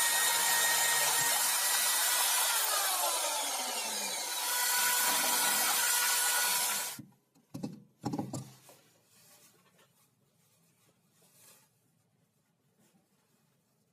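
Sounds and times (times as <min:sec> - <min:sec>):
jigsaw cutting wood: 0:00.0 - 0:07.0.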